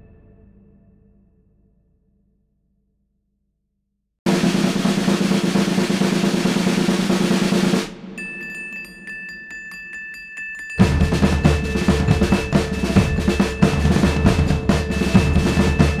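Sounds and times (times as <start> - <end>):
snare drum roll: 4.3 - 8.2, 10.8 - 16.0
ticking percussion beat: 4.3 - 16.0
held high tones: 8.2 - 16.0.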